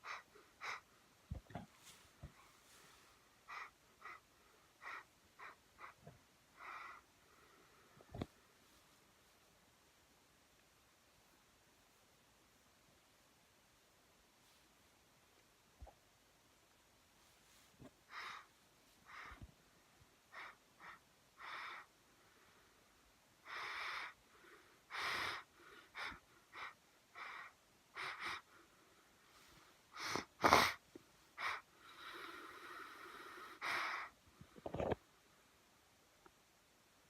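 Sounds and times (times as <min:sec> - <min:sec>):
wheezy breath: 0:00.0 - 0:01.0, 0:01.8 - 0:08.2, 0:17.8 - 0:19.5, 0:20.3 - 0:22.8, 0:23.4 - 0:34.7.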